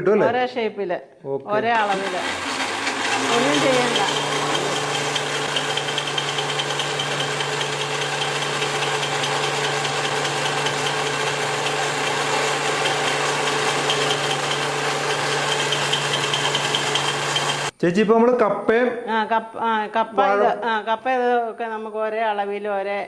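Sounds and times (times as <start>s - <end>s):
mixer grinder motor humming: 1.6s - 17.7s.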